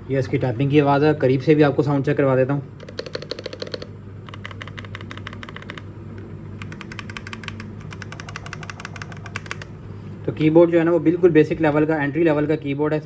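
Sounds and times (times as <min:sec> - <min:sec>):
mechanical keyboard typing: 0:02.8 - 0:09.7.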